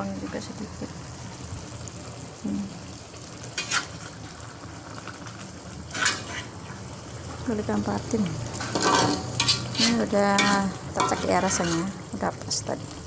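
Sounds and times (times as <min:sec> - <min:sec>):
fish sizzling in a pan: 0:00.0 - 0:13.0
utensil scraping a pan: 0:03.6 - 0:04.1, 0:05.9 - 0:06.8, 0:08.5 - 0:12.1.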